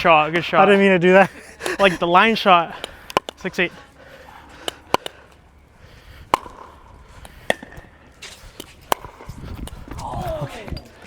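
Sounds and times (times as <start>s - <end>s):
pickleball knocking off paddles: 2.8s - 3.6s, 4.5s - 5.4s, 6.3s - 10.9s.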